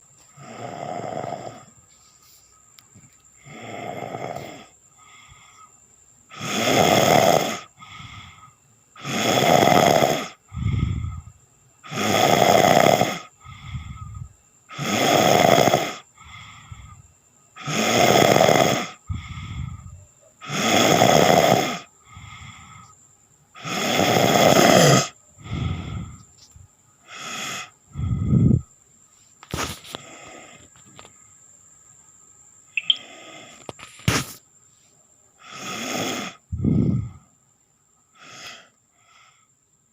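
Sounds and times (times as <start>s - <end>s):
quiet breaths: 0.0s - 39.9s
person snoring: 0.3s - 1.7s, 3.4s - 5.3s, 6.3s - 17.0s, 17.6s - 22.9s, 23.6s - 26.2s, 35.4s - 37.2s.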